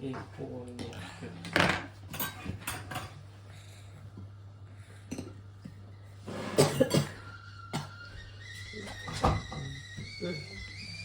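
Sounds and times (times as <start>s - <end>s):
person coughing: 6.5s - 7.2s.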